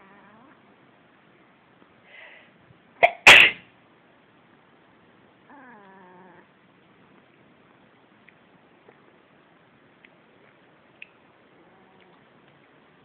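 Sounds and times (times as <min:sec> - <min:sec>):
person sneezing: 0:03.0 - 0:03.6
cat meowing: 0:05.5 - 0:06.4.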